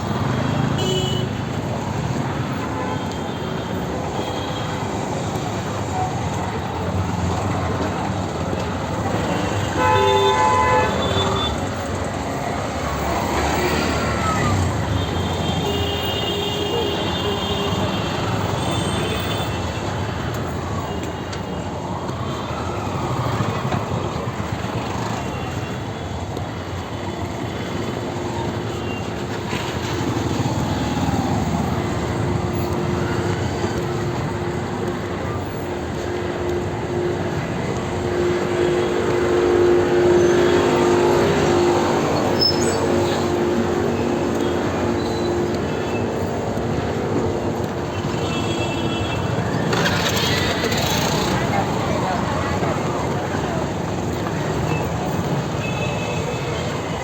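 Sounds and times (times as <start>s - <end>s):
traffic rumble: 0.0s - 57.0s
car horns honking: 9.2s - 11.7s, 48.0s - 51.4s.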